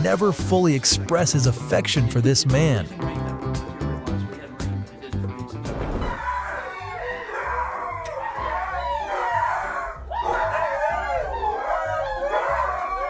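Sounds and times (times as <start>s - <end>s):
dog howling: 6.2s - 13.0s.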